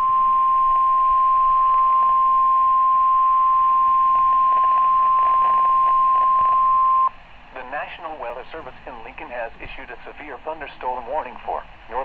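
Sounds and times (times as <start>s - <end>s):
weather radio alert tone: 0.0s - 7.1s.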